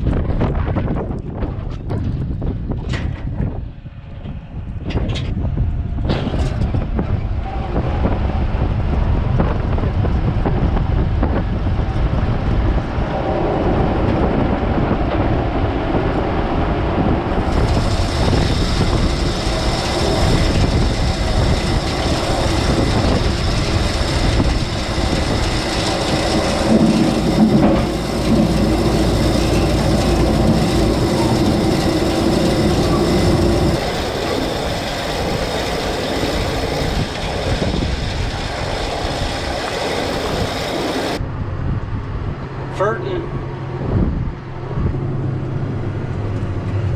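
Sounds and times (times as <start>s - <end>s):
tractor engine rumble: 12.9s - 41.2s
spreader rattling and clatter: 17.4s - 41.2s.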